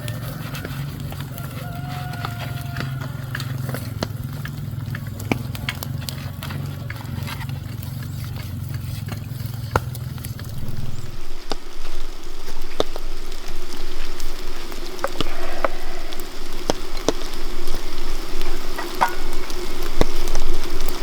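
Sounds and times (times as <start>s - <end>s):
food sizzling: 0.0s - 5.4s, 9.8s - 21.0s
sharp crackles and clicks: 0.0s - 21.0s
low steady rumble: 10.1s - 21.0s.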